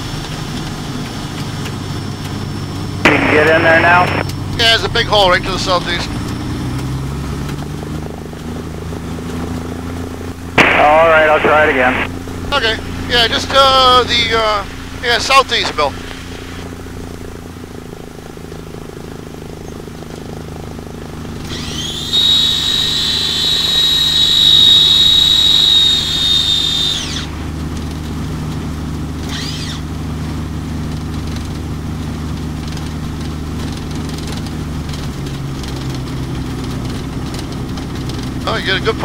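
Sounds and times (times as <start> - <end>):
piston engine running: 8.9 - 31.7
high whistling tone: 21.6 - 27.3.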